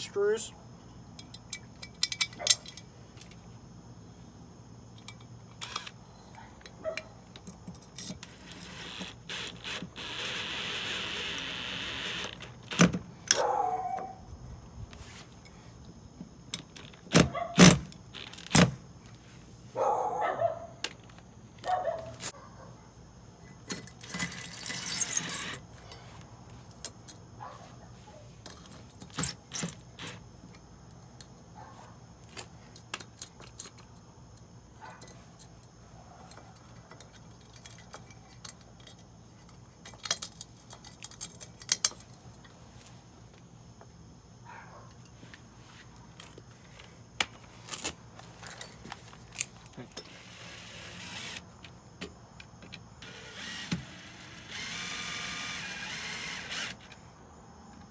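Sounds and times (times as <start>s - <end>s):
metal tools clinking and knocking: 1.2s - 3.4s, 23.6s - 26.1s, 36.3s - 42.2s.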